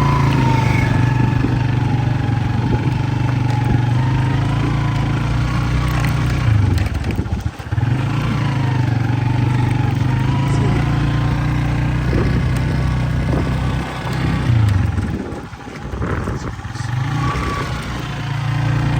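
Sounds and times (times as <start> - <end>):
engine humming: 0.0 - 18.9.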